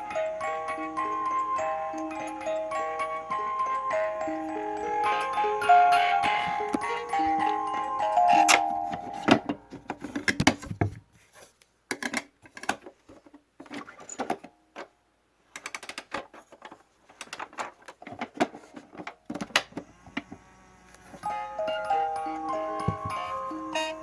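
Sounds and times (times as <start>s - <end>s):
plastic toy clicking and clattering: 11.9s - 14.9s, 15.5s - 20.3s.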